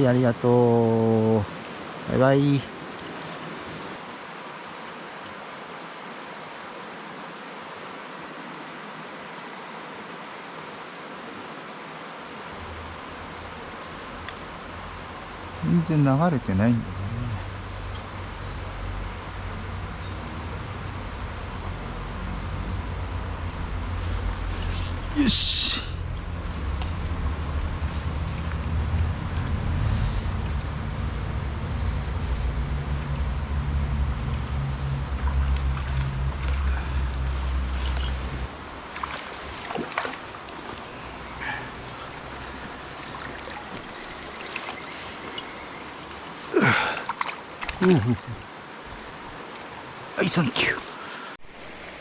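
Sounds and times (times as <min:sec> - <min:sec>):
mountain stream rushing: 0:00.0 - 0:52.0
low rumble: 0:25.9 - 0:38.8.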